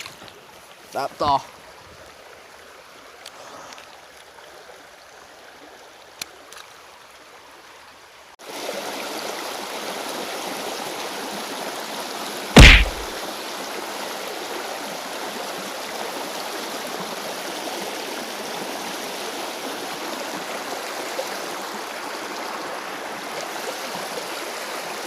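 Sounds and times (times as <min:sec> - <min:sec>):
stream water flowing over rocks: 0:00.0 - 0:25.0
loud thump: 0:12.6 - 0:13.1.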